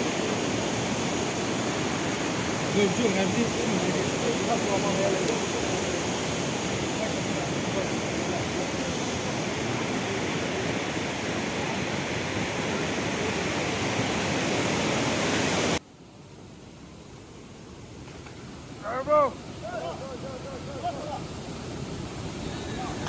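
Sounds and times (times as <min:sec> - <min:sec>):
waterfall rushing: 0:00.0 - 0:15.8, 0:18.7 - 0:23.0
soft hiss: 0:00.0 - 0:23.0.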